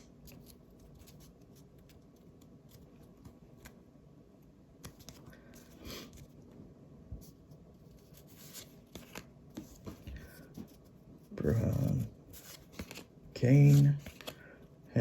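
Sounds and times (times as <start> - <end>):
trading cards clicking and rustling: 8.5 - 10.7, 11.4 - 14.5.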